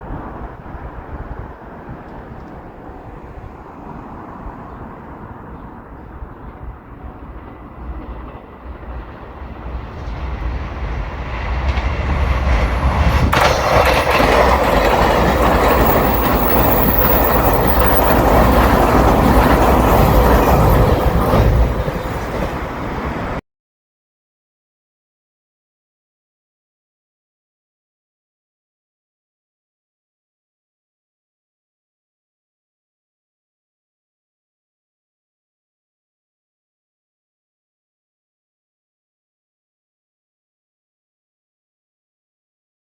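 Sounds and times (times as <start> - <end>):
electric train passing at speed: 0.0 - 23.4.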